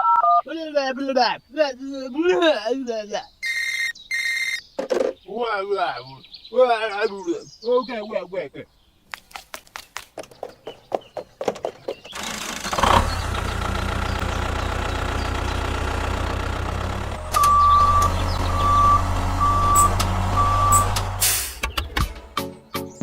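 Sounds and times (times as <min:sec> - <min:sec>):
reversing alarm beeps: 0:03.4 - 0:04.6, 0:17.3 - 0:21.0
tractor engine humming: 0:12.0 - 0:22.4.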